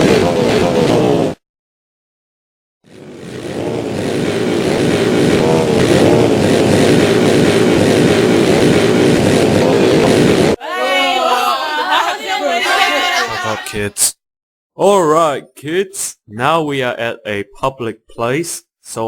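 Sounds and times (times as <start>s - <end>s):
faint wavering voices: 10.6s - 14.0s.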